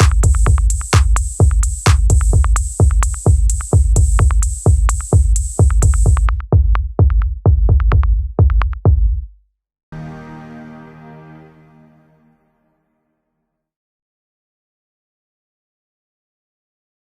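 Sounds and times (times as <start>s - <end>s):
drum machine beat: 0.0s - 9.3s
electronic music: 10.0s - 12.7s.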